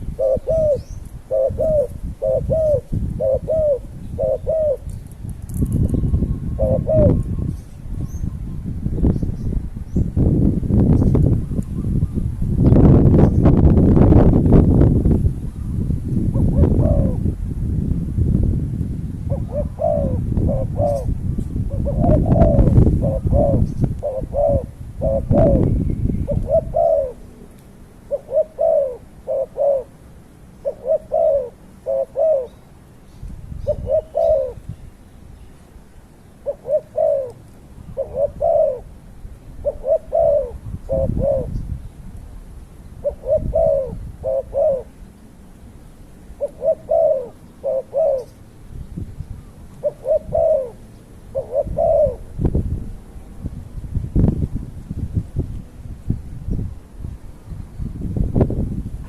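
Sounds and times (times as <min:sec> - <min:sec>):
dove cooing: 0:00.0 - 0:08.6, 0:15.6 - 0:17.4, 0:19.3 - 0:30.0, 0:30.6 - 0:32.6, 0:33.6 - 0:34.7, 0:36.4 - 0:39.0, 0:39.6 - 0:41.6, 0:43.0 - 0:45.1, 0:46.3 - 0:48.4, 0:49.4 - 0:52.5.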